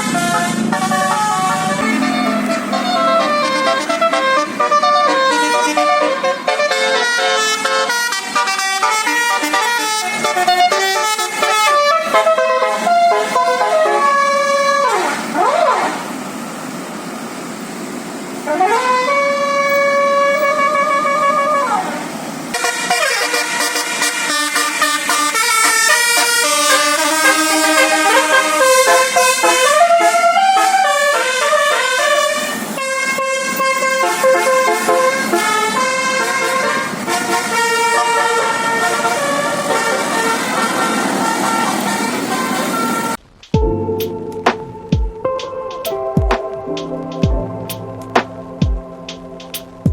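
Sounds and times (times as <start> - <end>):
noisy rush: 0.0 - 7.2, 33.5 - 49.9
bus musical horn: 0.0 - 16.2, 18.4 - 49.8
background noise: 0.0 - 49.9.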